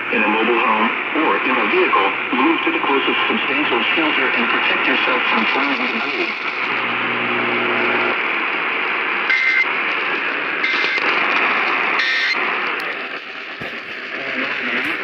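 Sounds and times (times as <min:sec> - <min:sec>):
radio static hiss: 0:00.0 - 0:15.0.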